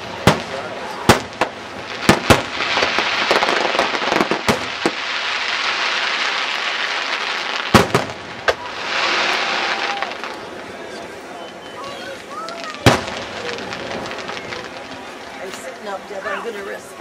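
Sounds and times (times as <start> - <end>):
crackling hiss: 0.0 - 17.0
firework shells bursting: 0.2 - 10.5, 12.5 - 15.7.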